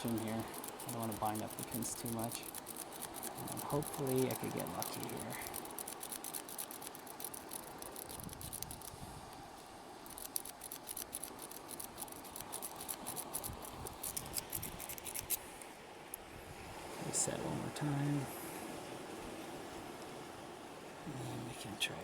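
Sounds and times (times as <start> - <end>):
pick rake clicking in a lock: 10.1 - 15.4.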